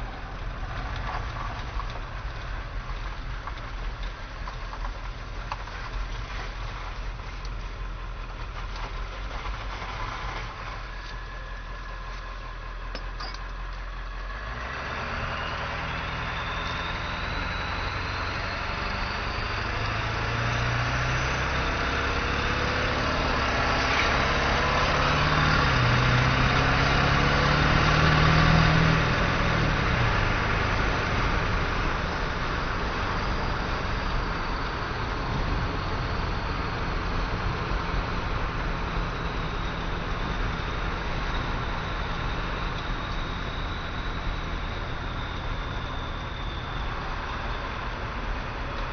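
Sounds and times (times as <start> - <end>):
high turbo whistle: 32.9 - 48.7.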